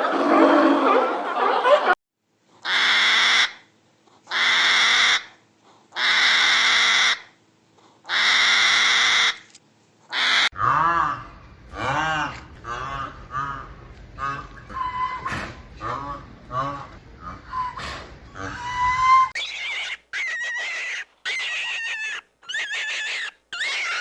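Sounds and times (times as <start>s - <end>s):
harsh raspy animal calls: 4.3s - 7.3s, 8.1s - 9.4s, 10.1s - 24.0s
chatter of animal calls: 6.0s - 7.3s, 8.1s - 9.4s, 10.1s - 24.0s.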